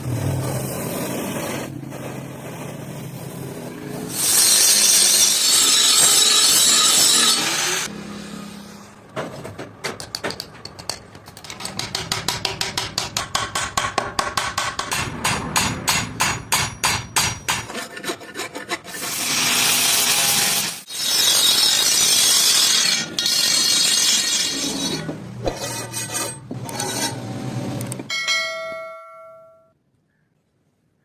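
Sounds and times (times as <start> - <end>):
metal grinding: 4.1 - 8.6, 14.6 - 28.7.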